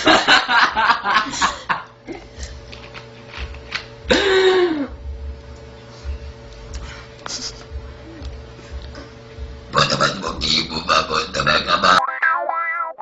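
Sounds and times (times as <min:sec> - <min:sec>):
vocal noise: 0:09.7 - 0:12.3.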